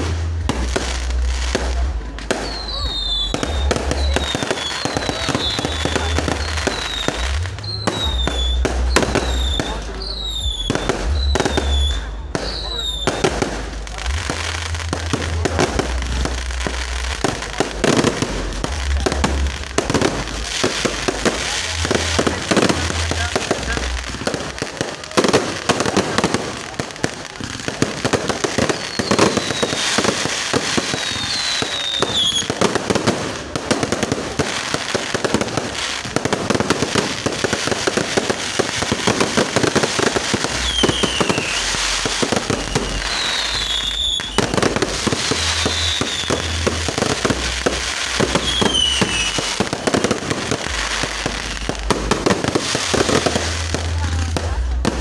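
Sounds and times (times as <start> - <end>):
fireworks crackling and popping: 0.0 - 55.0
falling firework whistles: 2.3 - 13.3, 28.6 - 32.6, 38.0 - 50.1.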